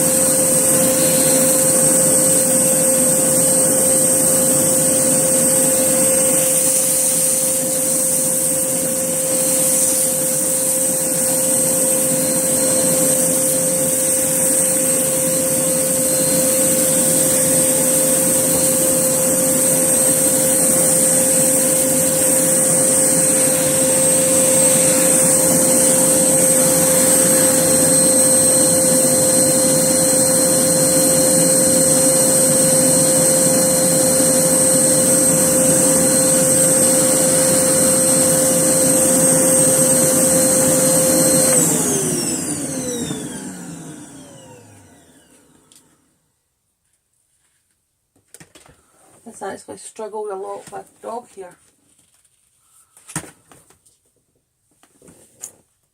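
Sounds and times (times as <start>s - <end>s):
vacuum cleaner running: 0.0s - 46.4s.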